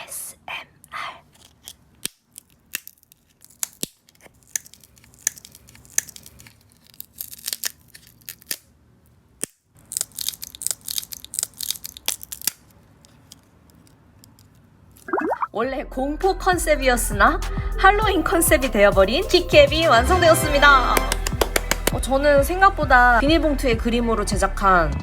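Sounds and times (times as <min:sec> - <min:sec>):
sharp snips: 0:21.0 - 0:22.0.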